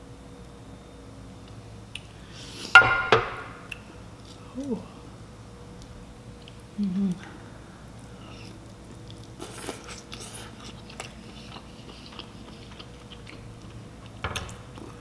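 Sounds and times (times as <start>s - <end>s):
biting and chewing seafood: 6.3s - 15.0s.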